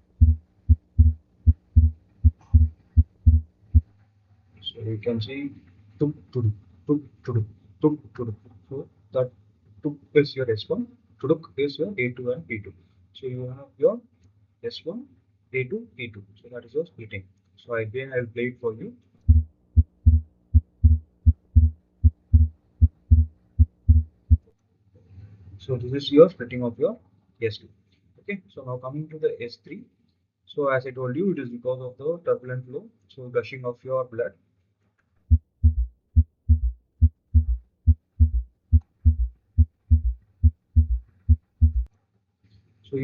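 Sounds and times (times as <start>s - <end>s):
faint steady hum: 0.0s - 3.9s, 19.3s - 24.5s
heartbeat: 0.0s - 3.9s, 19.3s - 24.5s, 35.3s - 41.9s.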